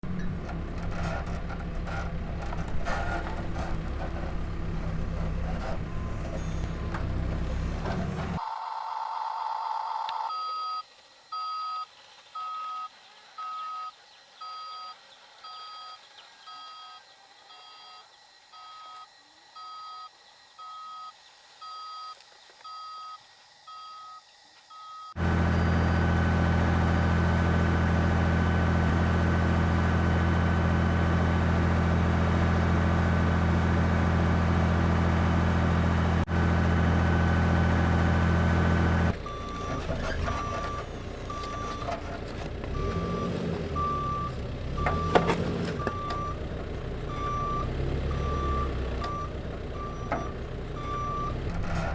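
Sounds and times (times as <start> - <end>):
engine-like hum with high whine: 0.0 - 8.4
reversing beeper: 4.5 - 19.0, 39.1 - 42.1, 42.7 - 46.4, 47.1 - 51.9.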